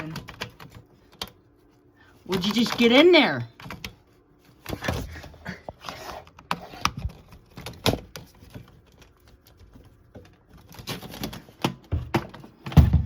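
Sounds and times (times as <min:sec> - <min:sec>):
fan parts clicking and knocking: 0:00.0 - 0:13.0.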